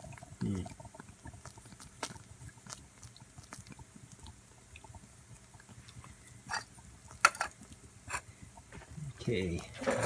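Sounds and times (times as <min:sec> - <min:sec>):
coffee maker sputtering: 0:09.7 - 0:10.0.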